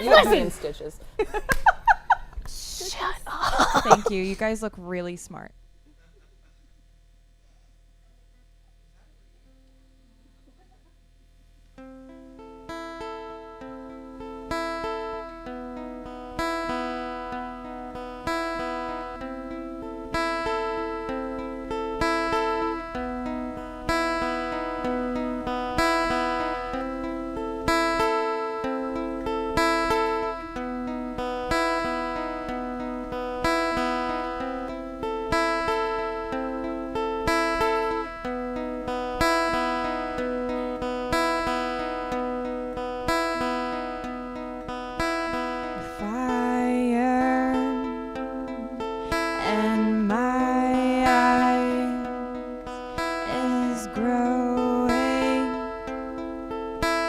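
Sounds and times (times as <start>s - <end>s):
acoustic guitar chords: 11.6s - 57.0s.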